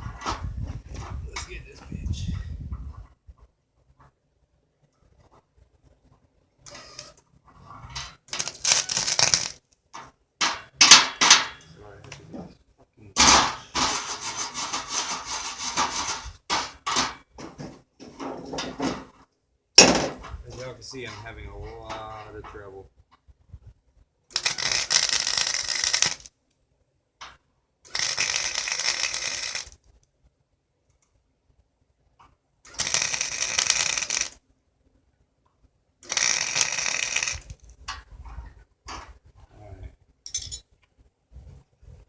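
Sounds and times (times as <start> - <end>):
arc welding: 8.3 - 9.7, 13.2 - 17.1, 24.3 - 26.3, 27.9 - 29.8, 32.7 - 34.4, 36.0 - 37.7
clicks and knocks of metal handling: 13.2 - 19.2, 40.2 - 40.9.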